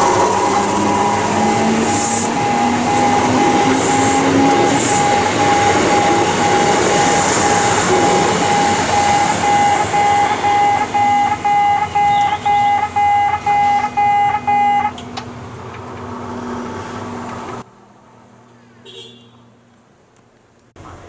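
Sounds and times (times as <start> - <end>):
higher alarm tones: 0.0 - 15.2
level crossing alarm tone: 0.0 - 15.5
train passing with rumble: 0.0 - 18.1.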